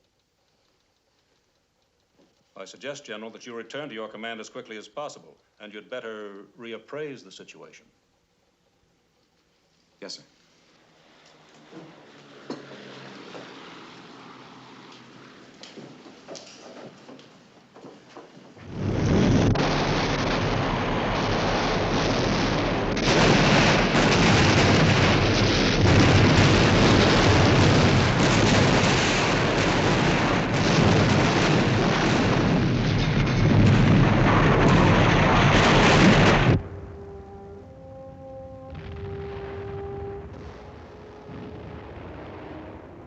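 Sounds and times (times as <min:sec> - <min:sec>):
artillery explosions: 0:18.5 - 0:43.0
gunfire: 0:18.6 - 0:38.0.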